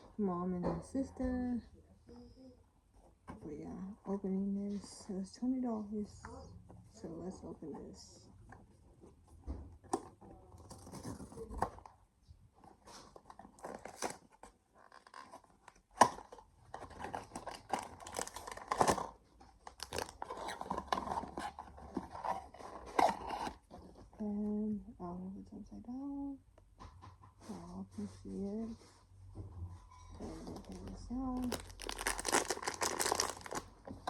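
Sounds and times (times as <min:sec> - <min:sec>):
packaging tearing and crinkling: 0:13.4 - 0:23.6, 0:30.6 - 0:33.8.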